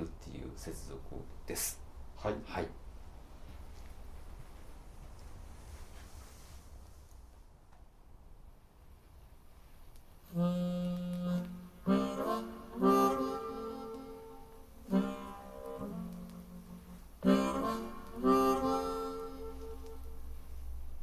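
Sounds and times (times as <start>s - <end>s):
slow instrumental waltz from speakers: 10.2s - 21.0s.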